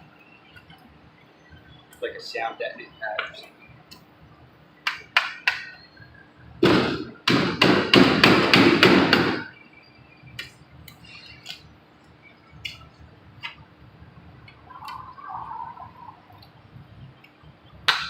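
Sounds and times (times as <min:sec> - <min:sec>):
hammering on sheet metal: 0:06.6 - 0:09.5.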